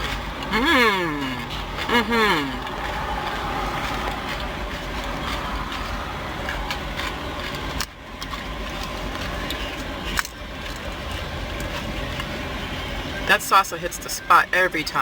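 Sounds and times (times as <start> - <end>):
traffic rumble: 0.0 - 15.0
chips crunching: 2.5 - 12.4.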